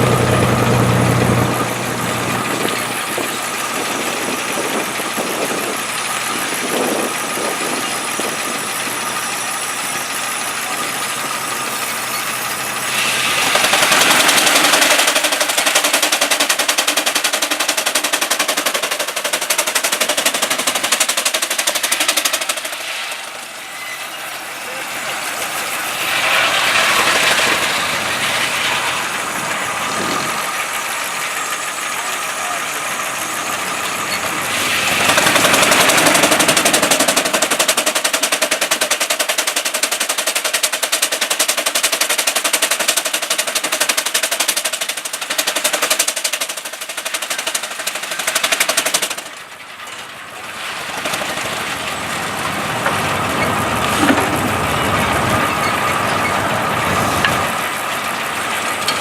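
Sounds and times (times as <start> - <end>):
circular saw whine cutting log: 0.0 - 59.0
steam engine exhaust beats: 0.0 - 59.0.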